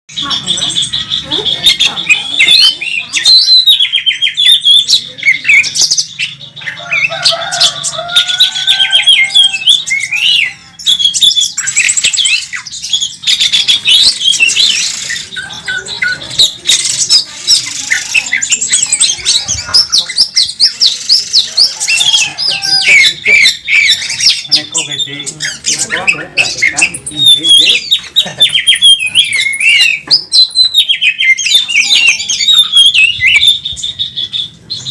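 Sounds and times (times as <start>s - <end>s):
bird singing whistles and trills: 8.2s - 34.9s.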